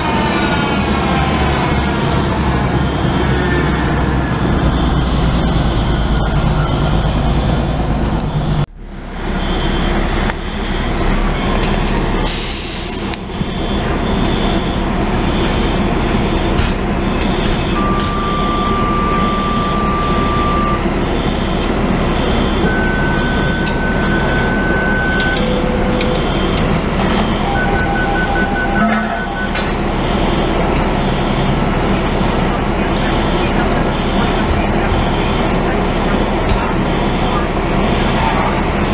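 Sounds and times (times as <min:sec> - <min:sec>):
diesel engine running: 0:00.0 - 0:38.9
steady beeping tones: 0:13.3 - 0:38.7
fire alarm pulsing: 0:13.4 - 0:38.2.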